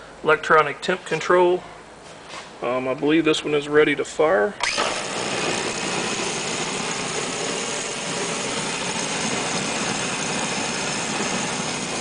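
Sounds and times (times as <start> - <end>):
oil burner roaring: 4.6 - 12.0.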